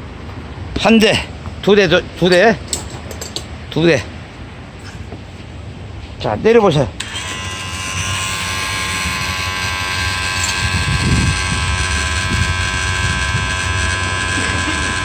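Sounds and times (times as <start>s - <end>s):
hydraulic pump whining: 7.0s - 15.0s.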